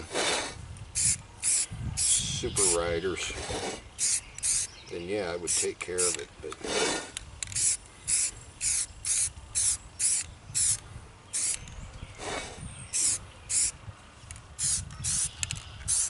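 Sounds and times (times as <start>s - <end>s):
spray paint can hissing: 0.9s - 2.8s, 4.0s - 4.7s, 5.5s - 6.2s, 7.4s - 11.6s, 12.9s - 13.8s, 14.6s - 16.0s.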